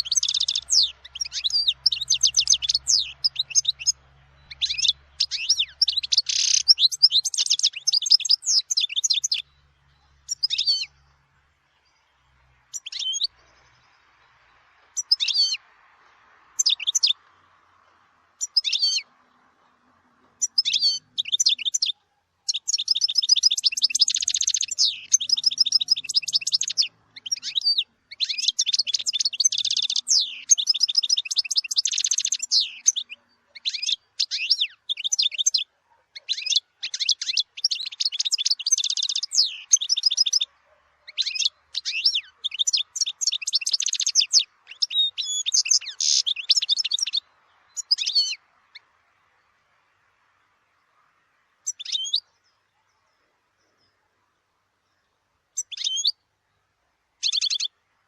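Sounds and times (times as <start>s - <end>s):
goldfinch singing: 0.0s - 50.0s, 51.6s - 54.0s, 54.9s - 56.2s, 57.2s - 57.8s.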